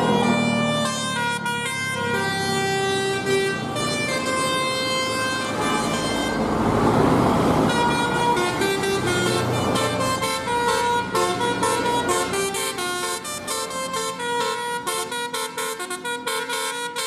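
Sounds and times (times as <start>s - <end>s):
bus horn playing a tune: 0.0s - 17.0s
loud rushing noise: 5.3s - 10.0s.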